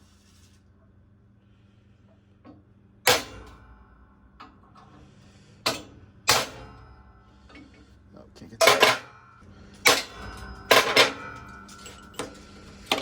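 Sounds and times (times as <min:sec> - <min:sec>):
hammer striking metal punch: 0:03.1 - 0:03.9, 0:05.7 - 0:07.1, 0:08.6 - 0:13.0.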